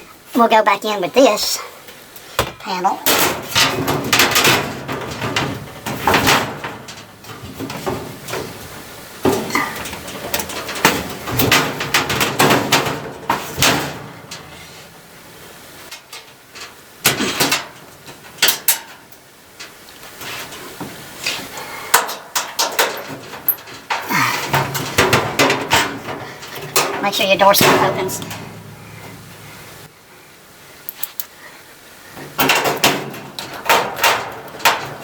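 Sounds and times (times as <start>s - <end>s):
sheet metal clattering and scraping: 2.4s - 29.9s, 32.1s - 35.0s.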